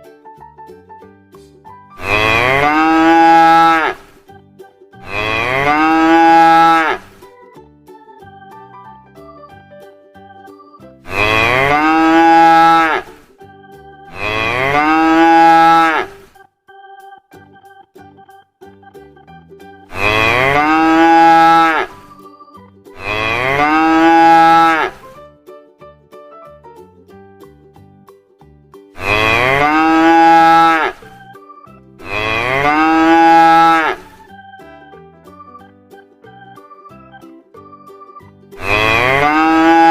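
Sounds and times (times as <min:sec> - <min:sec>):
soft background music: 0:00.0 - 0:39.9
cow mooing: 0:02.0 - 0:04.1, 0:05.0 - 0:07.1, 0:11.1 - 0:13.2, 0:14.1 - 0:16.2, 0:19.9 - 0:22.0, 0:23.0 - 0:25.0, 0:29.0 - 0:31.1, 0:32.0 - 0:34.2, 0:38.6 - 0:39.9.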